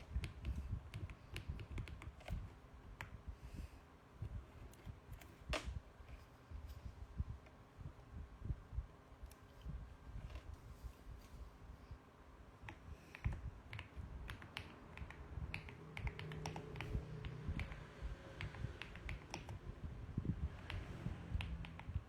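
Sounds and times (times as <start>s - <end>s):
mechanical keyboard typing: 0.0s - 3.1s, 12.7s - 19.7s, 20.5s - 22.0s.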